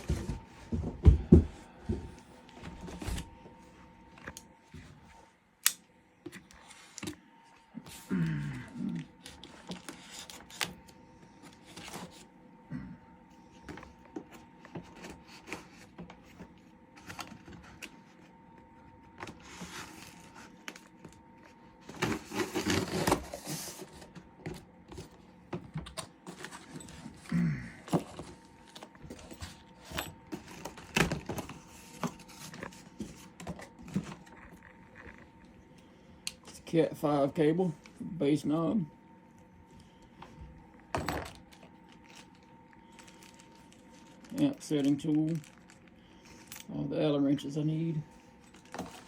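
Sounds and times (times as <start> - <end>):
packaging rustling: 41.2 - 46.7, 48.2 - 49.0.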